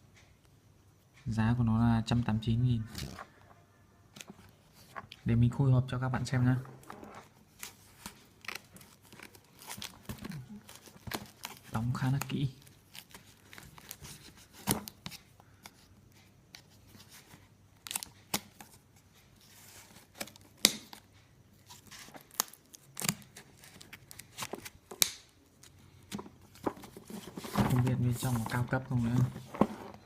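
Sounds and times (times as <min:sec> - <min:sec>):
packaging crinkling: 0:06.8 - 0:15.0
tape and packaging ripping: 0:21.6 - 0:25.3.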